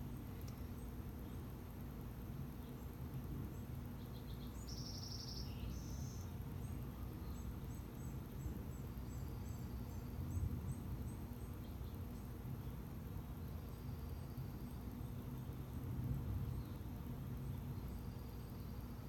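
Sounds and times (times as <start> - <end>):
bird trill and chirps: 4.0 - 10.1.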